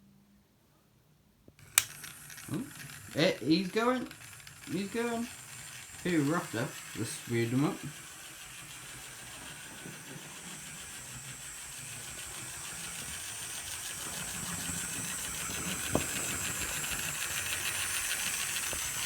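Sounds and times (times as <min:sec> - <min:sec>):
model train motor whirring: 0:01.6 - 0:19.0
sharp click: 0:01.7 - 0:05.1.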